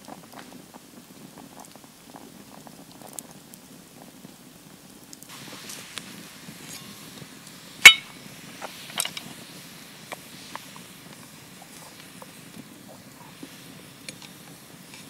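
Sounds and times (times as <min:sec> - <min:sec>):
cookware clicks and taps: 0:07.8 - 0:08.1
sharp metallic clink: 0:07.8 - 0:08.1.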